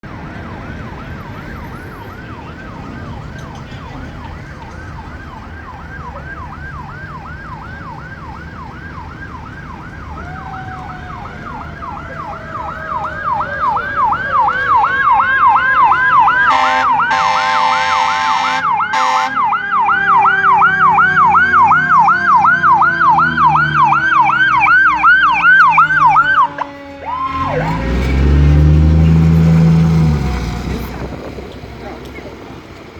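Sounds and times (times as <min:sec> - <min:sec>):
fire engine siren yelping: 0:00.0 - 0:31.1
low falling siren tone: 0:00.0 - 0:31.2
diesel engine: 0:00.0 - 0:32.9
loud horn blast: 0:13.7 - 0:19.6, 0:20.3 - 0:30.8.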